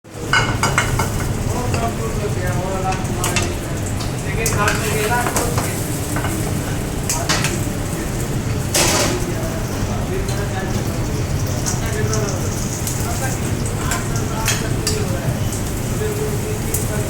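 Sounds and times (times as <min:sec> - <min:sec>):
food sizzling in a pan: 0:00.1 - 0:17.0
utensil clicking against pan: 0:00.3 - 0:07.6, 0:13.8 - 0:15.1.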